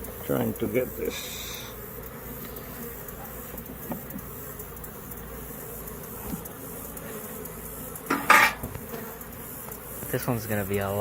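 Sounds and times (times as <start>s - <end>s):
bees buzzing: 0.0s - 11.0s
faint knocks: 3.2s - 4.3s.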